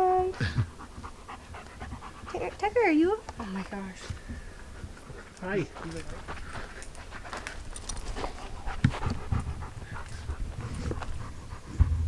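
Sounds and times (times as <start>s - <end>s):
dog panting: 0.4s - 12.0s
low rumble: 11.5s - 12.0s.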